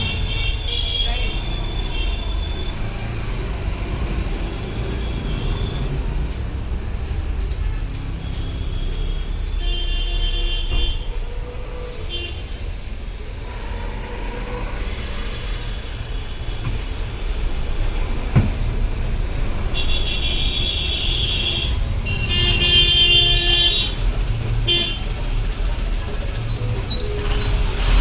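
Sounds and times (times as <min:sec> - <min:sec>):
road traffic rumbling: 0:00.0 - 0:28.0
vehicle horns: 0:19.7 - 0:24.0, 0:24.6 - 0:25.1.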